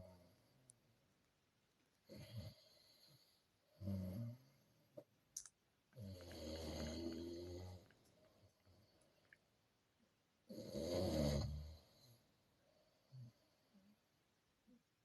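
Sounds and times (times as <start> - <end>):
person snoring: 3.8 - 4.5, 6.0 - 7.9, 10.5 - 12.1.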